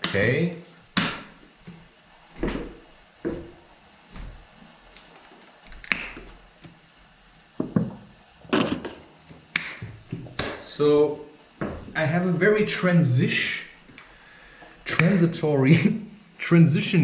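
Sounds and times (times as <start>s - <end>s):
kitchen things knocking and clattering: 7.6s - 9.1s.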